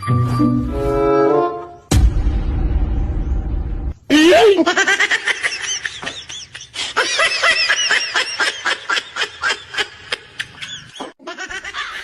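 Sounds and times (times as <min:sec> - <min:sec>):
high-pitched giggling laughter: 0:04.1 - 0:12.0.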